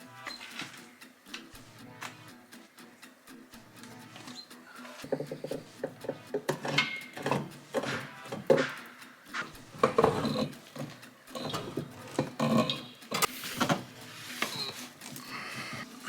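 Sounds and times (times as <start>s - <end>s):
hand tools clinking on metal fittings: 4.8s - 15.3s.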